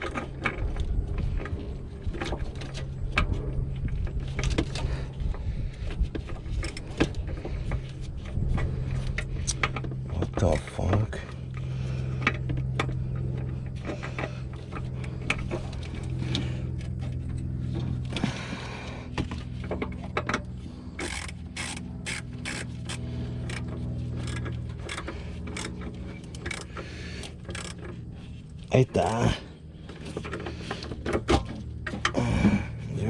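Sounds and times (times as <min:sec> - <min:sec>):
steady low hum: 0:00.0 - 0:33.0
ratchet wrench clicking: 0:21.0 - 0:27.8.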